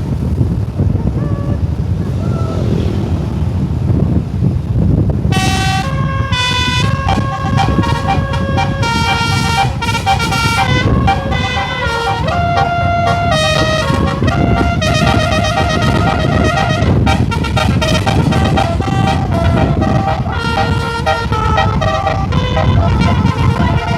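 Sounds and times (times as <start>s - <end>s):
engine and road rumble: 0.0s - 23.9s
multi-tone musical air horn: 5.3s - 23.9s.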